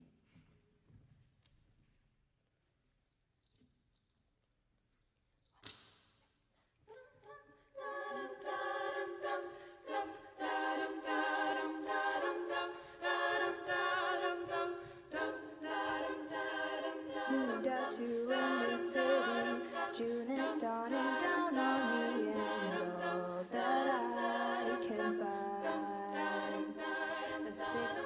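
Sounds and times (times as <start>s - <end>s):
a cappella group singing: 7.2s - 28.0s.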